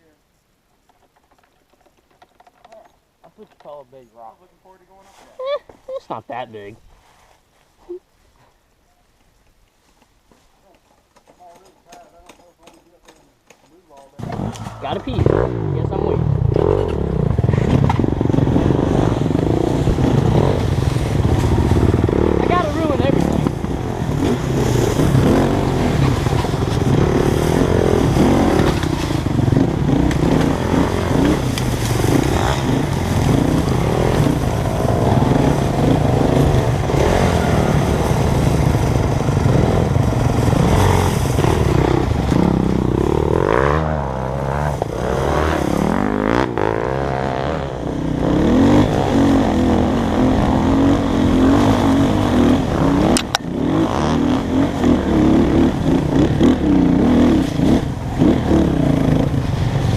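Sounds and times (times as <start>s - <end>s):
dirt bike engine revving: 14.2s - 59.9s.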